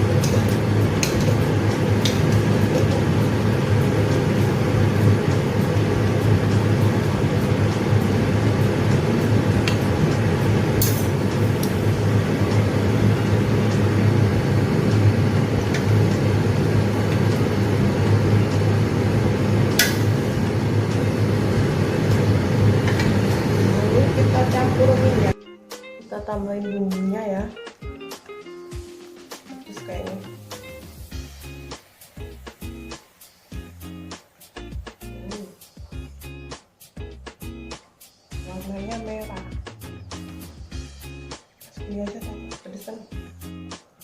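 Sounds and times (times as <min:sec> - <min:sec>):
low mechanical hum: 0:00.0 - 0:25.4.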